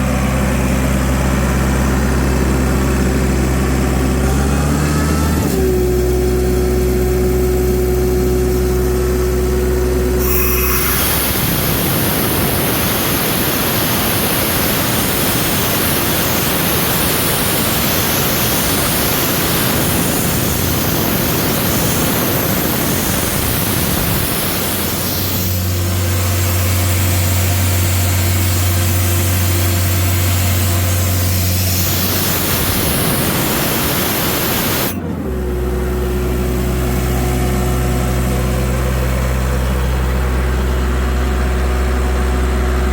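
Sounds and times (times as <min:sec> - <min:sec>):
diesel engine running: 0:00.0 - 0:42.9
loud rushing hiss: 0:10.2 - 0:35.0.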